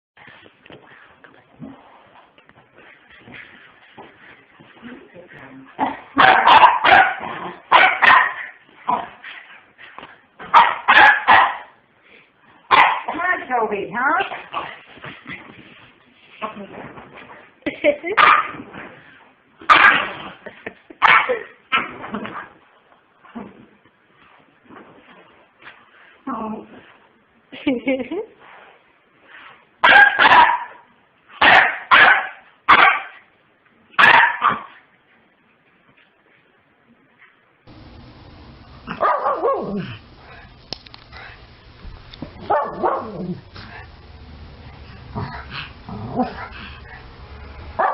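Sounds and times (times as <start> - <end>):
puppy barking and yipping: 6.2 - 8.5, 10.5 - 11.7, 29.8 - 30.8, 31.4 - 33.1, 34.0 - 34.7, 38.9 - 39.8, 42.5 - 43.3.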